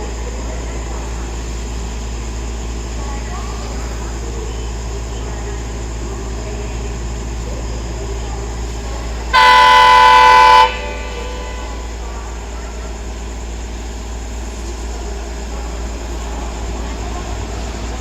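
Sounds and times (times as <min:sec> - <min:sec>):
locomotive horn blast: 0:09.3 - 0:12.2.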